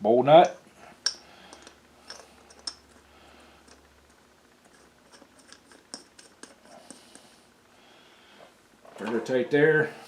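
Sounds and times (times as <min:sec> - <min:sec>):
faint metal parts clicking: 0:00.4 - 0:03.0.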